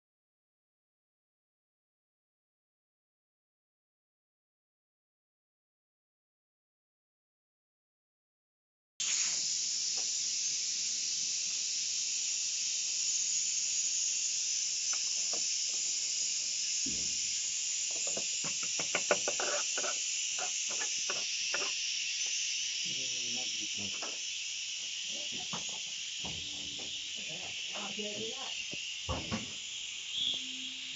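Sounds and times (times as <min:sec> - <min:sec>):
steady high hiss: 0:09.0 - 0:30.9
hand tools clicking and knocking: 0:18.0 - 0:21.7.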